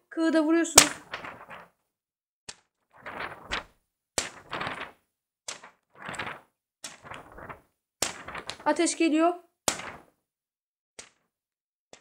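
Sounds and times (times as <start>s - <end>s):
pen striking paper: 8.0s - 8.6s, 9.7s - 10.1s, 11.0s - 11.3s.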